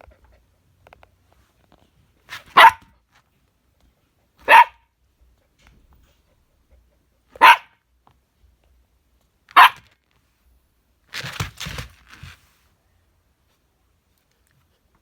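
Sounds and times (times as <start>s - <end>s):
dog barking: 2.3s - 2.9s, 4.4s - 4.9s, 7.3s - 7.8s, 9.5s - 9.9s.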